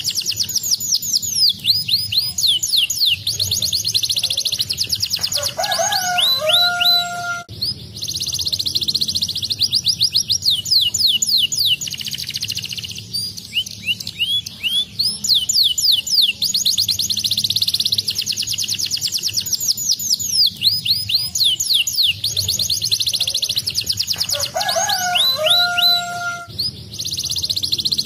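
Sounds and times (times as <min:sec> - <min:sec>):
canary singing trills and whistles: 0:00.0 - 0:28.0.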